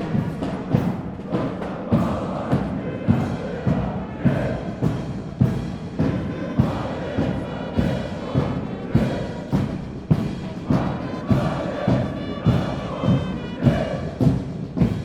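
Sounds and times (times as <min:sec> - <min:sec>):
bass drum beat: 0:00.0 - 0:15.0
military band playing a march: 0:00.0 - 0:15.0.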